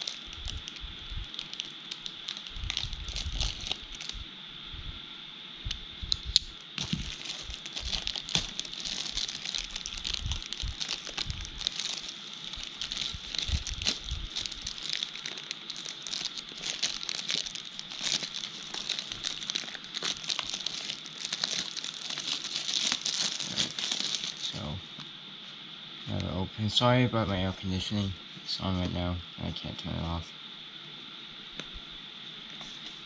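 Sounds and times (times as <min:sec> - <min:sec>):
packaging crinkling and tearing: 0:00.0 - 0:04.2, 0:06.1 - 0:24.6.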